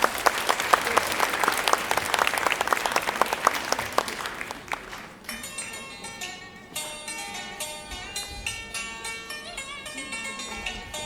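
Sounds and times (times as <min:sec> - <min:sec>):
audience applauding: 0:00.0 - 0:05.8
music: 0:05.2 - 0:11.0.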